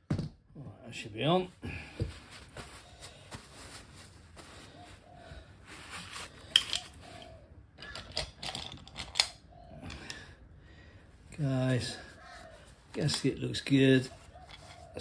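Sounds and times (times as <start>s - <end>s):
metal parts and tools clicking: 6.5s - 10.1s.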